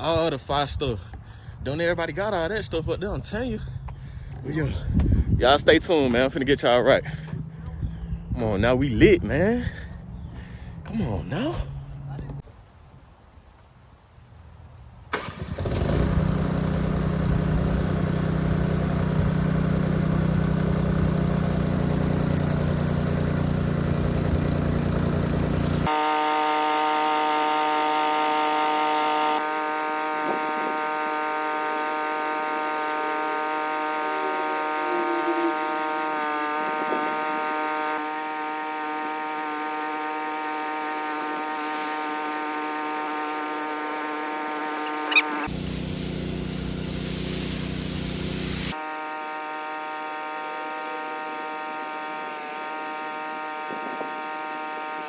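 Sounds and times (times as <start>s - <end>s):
engine drone: 5.9s - 12.4s, 15.1s - 55.0s
buzzing whine: 18.4s - 55.0s.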